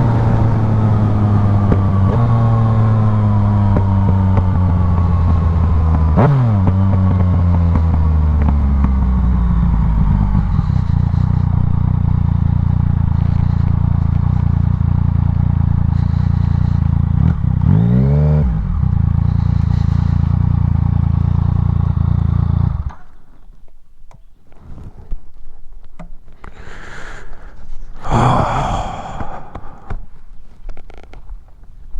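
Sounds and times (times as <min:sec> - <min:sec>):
motorcycle engine idling: 0:02.6 - 0:17.9, 0:18.5 - 0:24.3.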